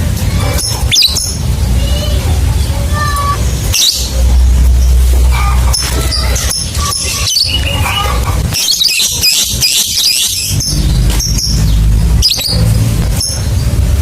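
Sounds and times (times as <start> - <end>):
low steady hum: 0.0 - 14.0
lovebird chattering: 0.5 - 1.5, 3.7 - 13.6.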